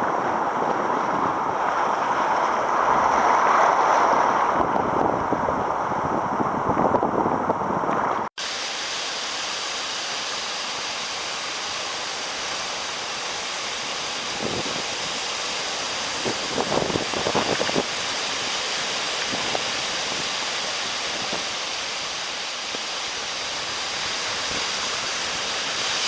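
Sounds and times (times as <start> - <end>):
wind buffeting microphone: 0.0 - 8.3, 14.3 - 15.2, 16.0 - 18.1, 19.2 - 20.4
rushing sea water: 0.0 - 26.0
water splashes: 0.0 - 26.0.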